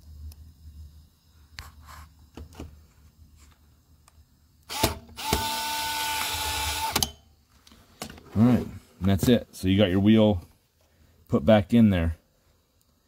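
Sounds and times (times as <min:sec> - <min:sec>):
power screwdriver whining: 0:04.7 - 0:07.1.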